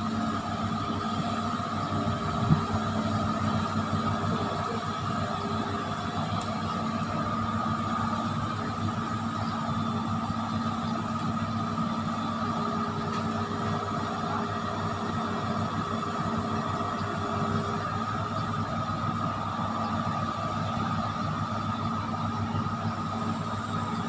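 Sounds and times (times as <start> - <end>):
excavator diesel engine running: 0.0 - 24.0
high engine whine: 0.0 - 24.0.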